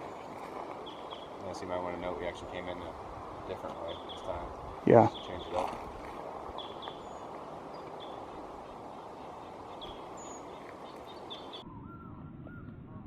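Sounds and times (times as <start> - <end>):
small birds chirping: 0.0 - 12.7
rising-and-falling calls: 6.5 - 12.8.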